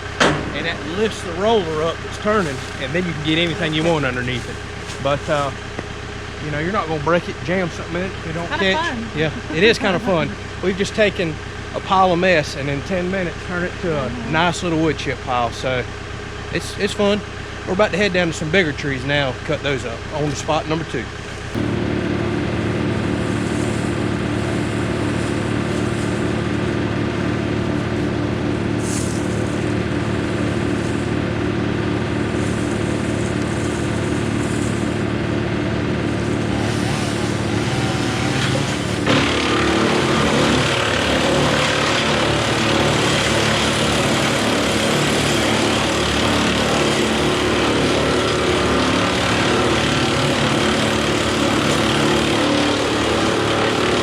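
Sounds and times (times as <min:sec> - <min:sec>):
tractor diesel engine running: 0:00.0 - 0:54.0.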